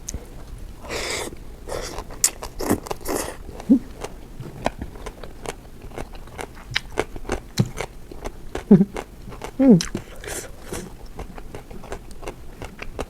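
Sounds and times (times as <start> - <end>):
person chewing crunchy food: 0.0 - 13.0
person humming: 9.6 - 10.9.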